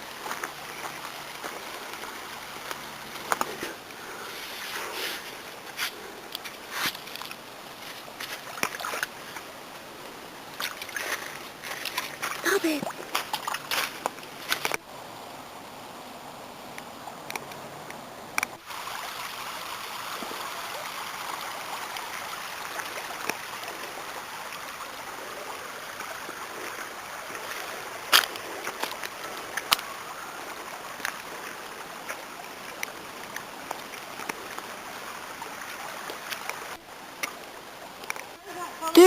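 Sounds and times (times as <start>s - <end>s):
river water flowing: 0.0s - 39.0s.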